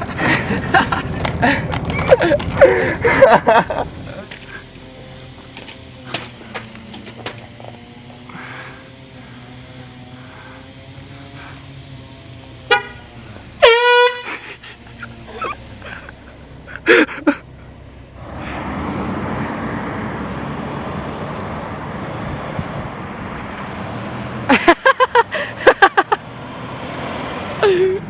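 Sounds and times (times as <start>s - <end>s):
air horn blast: 12.6s - 14.5s.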